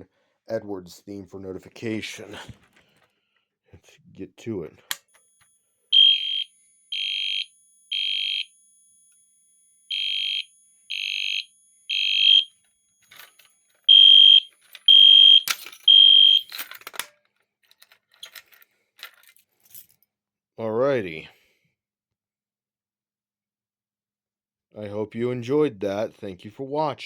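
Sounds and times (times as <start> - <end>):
fire alarm beeps: 5.3 - 12.7, 13.9 - 16.5
clicks and rattles: 13.0 - 13.9, 14.5 - 20.0.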